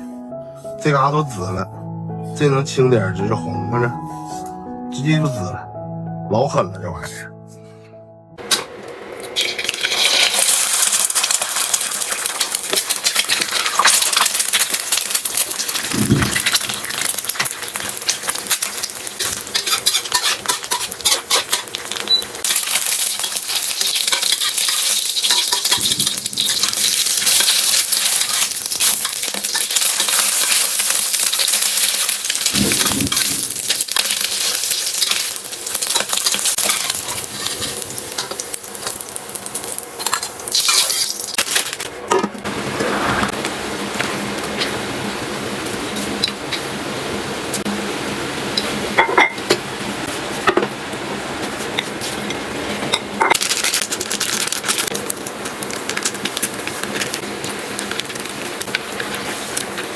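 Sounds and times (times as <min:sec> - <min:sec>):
food sizzling in hot oil: 0:09.2 - 0:41.9, 0:53.2 - 0:59.9
utensil clinking and scraping pan: 0:18.5 - 0:21.8.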